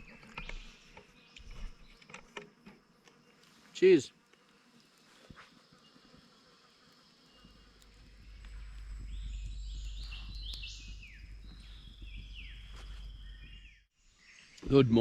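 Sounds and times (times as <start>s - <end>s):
steady low rumble: 7.9s - 13.8s
birds whistling high notes: 8.2s - 14.8s.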